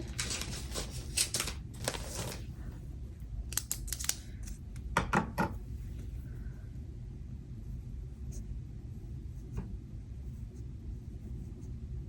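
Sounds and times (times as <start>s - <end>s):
paper and sticker rustling: 0.0s - 2.8s.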